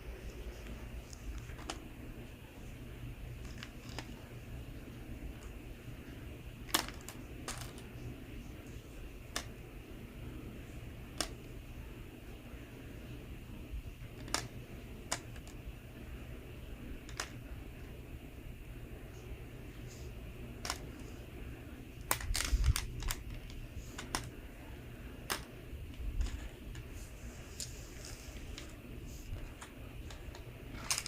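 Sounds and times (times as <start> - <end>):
low steady hum: 0.0 - 31.0
plastic balls clicking together: 17.0 - 17.4, 22.0 - 24.3.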